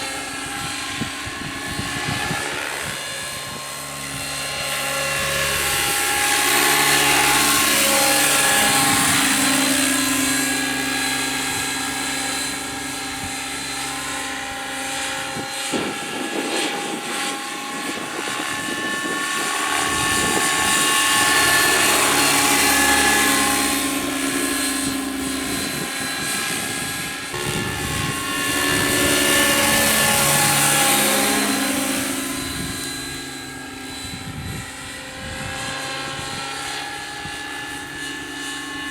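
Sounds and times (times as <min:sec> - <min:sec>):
model helicopter rotor whine: 0:00.0 - 0:38.9.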